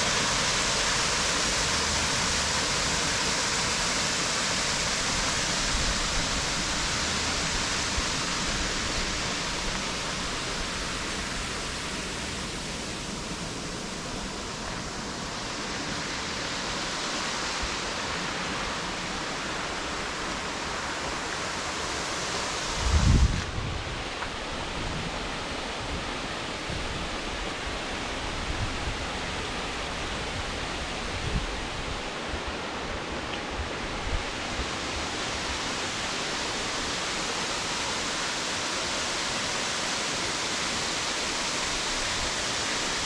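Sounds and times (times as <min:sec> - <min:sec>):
small waterfall splashing: 0:00.0 - 0:31.1, 0:32.0 - 0:43.0.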